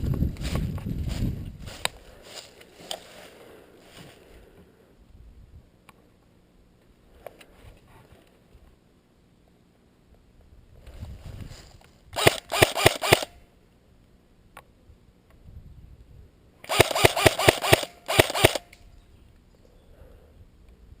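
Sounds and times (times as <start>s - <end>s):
airsoft rifle firing: 12.2s - 13.4s, 16.6s - 18.7s.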